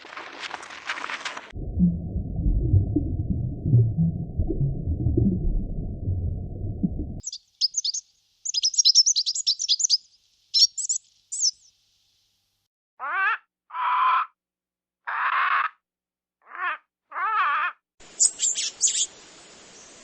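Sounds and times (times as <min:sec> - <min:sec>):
lower bird calls: 0:07.2 - 0:11.8, 0:18.1 - 0:20.0
songbird chirping and twittering: 0:07.2 - 0:12.2, 0:18.0 - 0:20.0.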